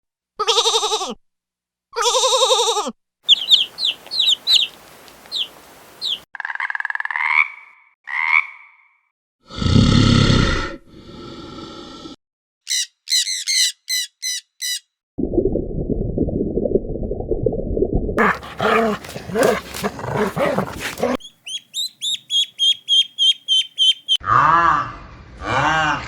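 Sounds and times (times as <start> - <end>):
birds chirping: 3.3 - 6.2, 18.2 - 24.2
rising animal calls: 3.3 - 6.2, 18.2 - 24.2
loud deep animal call: 18.2 - 21.2.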